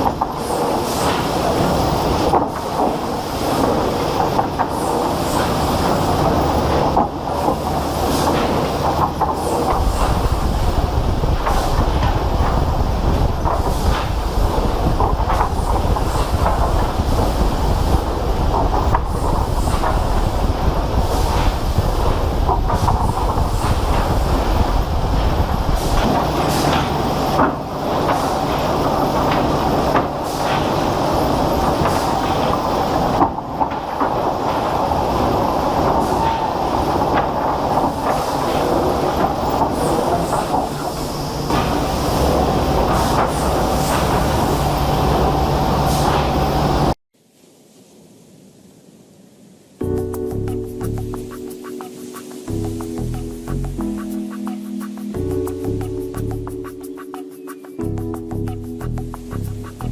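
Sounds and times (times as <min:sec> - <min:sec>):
heavy machinery rumbling: 0:00.0 - 0:47.0
machinery rattling and knocking: 0:00.0 - 0:47.0.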